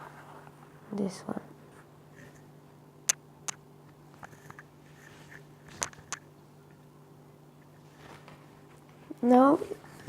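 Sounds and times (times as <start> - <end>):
faint steady hum: 0.0 - 10.0.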